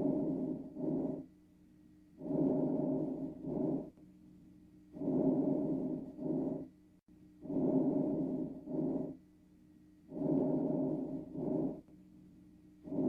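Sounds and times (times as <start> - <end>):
lung breath sounds: 0.0 - 1.3, 2.2 - 3.9, 5.0 - 6.7, 7.4 - 9.2, 10.1 - 11.9
faint steady hum: 0.0 - 13.0.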